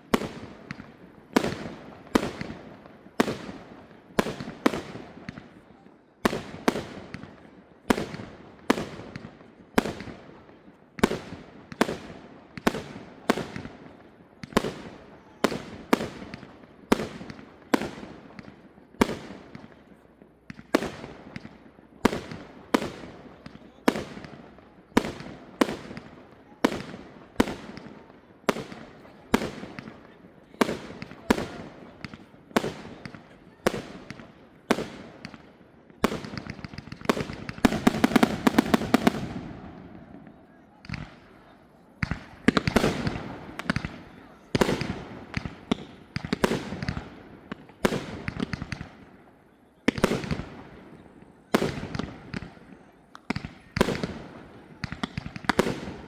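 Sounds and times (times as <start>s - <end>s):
fireworks bursting: 0.0s - 5.5s, 11.0s - 56.0s.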